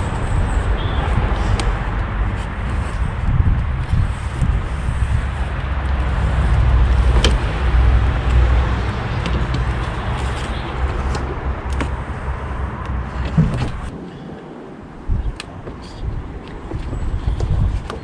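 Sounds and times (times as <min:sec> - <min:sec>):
vehicle engine rumble: 0:00.0 - 0:18.0.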